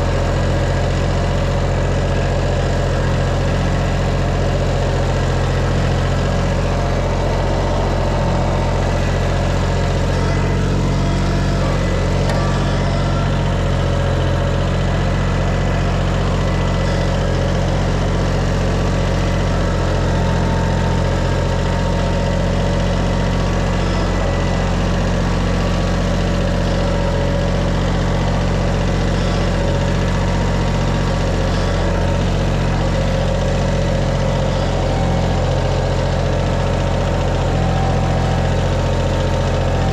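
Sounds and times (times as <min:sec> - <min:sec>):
engine humming steadily: 0:00.0 - 0:39.9.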